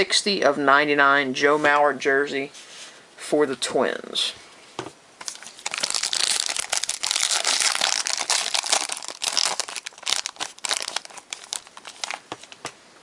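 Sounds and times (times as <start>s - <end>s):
foil wrapper crinkling and tearing: 5.2s - 12.6s.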